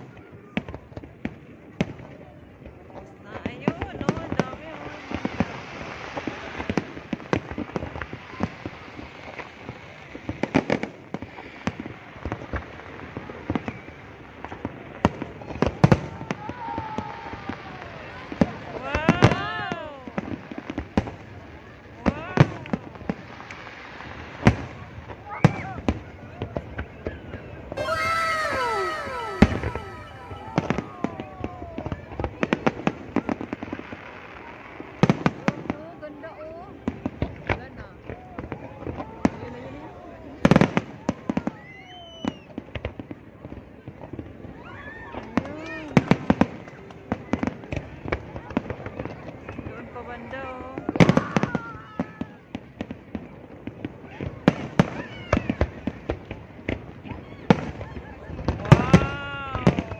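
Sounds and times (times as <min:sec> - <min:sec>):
firework whistles falling in pitch: 0:27.8 - 0:31.2.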